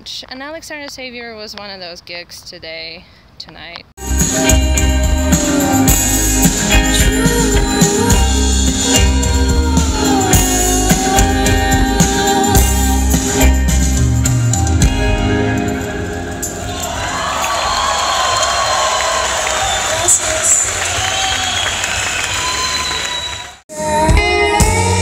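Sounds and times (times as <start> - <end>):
person singing: 4.0 - 13.8, 23.7 - 25.0
heavy bass pulses: 4.0 - 15.5
band music: 4.0 - 17.3, 23.7 - 25.0
drums: 4.0 - 18.9, 23.6 - 25.0.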